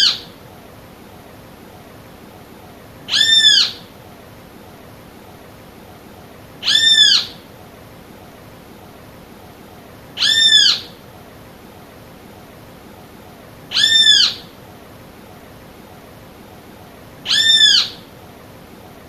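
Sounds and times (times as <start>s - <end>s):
bird calling: 0.0s - 0.4s, 3.1s - 3.9s, 6.6s - 7.4s, 10.2s - 11.0s, 13.7s - 14.6s, 17.2s - 18.1s.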